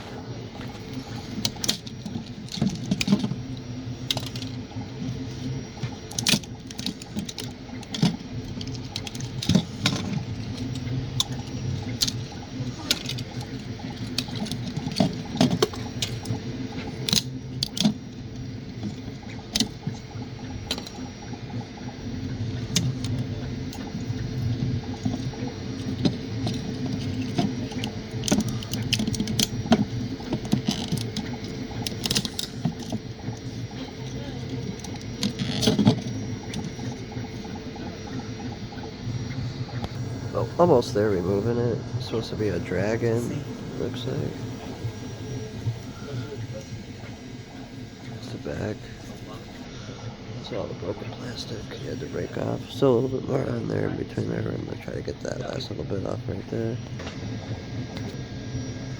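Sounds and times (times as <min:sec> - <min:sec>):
stepper motors whirring: 0:00.0 - 0:58.9
sharp irregular clicks: 0:00.6 - 0:21.7, 0:22.3 - 0:40.0.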